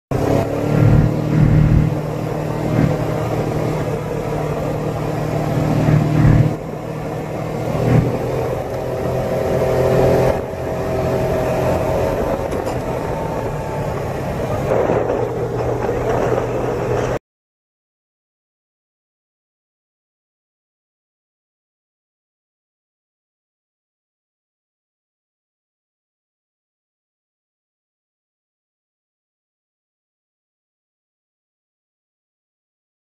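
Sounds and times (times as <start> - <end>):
vehicle engine running: 0.1 - 17.2.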